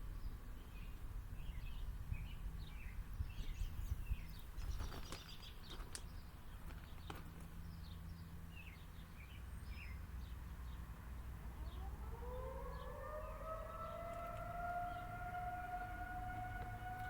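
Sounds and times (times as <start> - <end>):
birds chirping: 1.5 - 17.0
warning siren rising to steady tone: 10.4 - 17.0.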